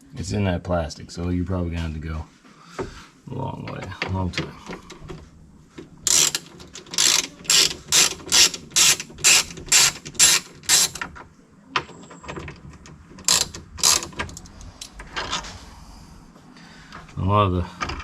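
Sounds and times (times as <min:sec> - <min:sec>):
hand ratchet clicking: 0:06.1 - 0:11.1, 0:13.2 - 0:14.5.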